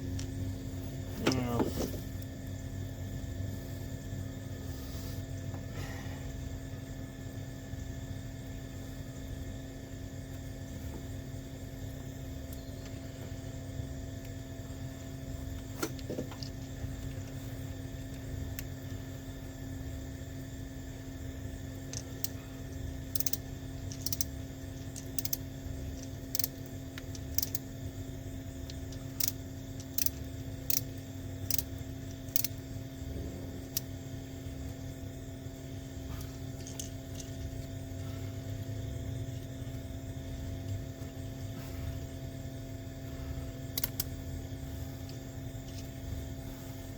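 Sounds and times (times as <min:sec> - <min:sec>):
steady low hum: 0:00.0 - 0:46.9
metallic clicks of hand tools: 0:23.2 - 0:24.3.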